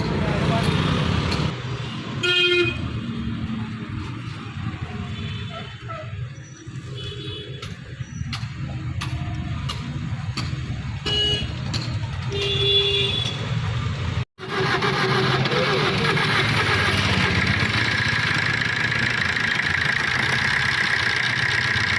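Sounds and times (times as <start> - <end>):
car engine idling: 14.4 - 21.9.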